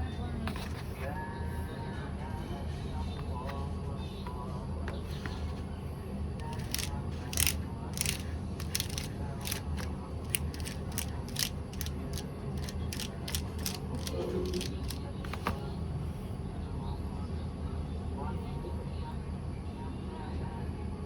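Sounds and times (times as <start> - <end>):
mechanical keyboard clicks: 6.4 - 15.0.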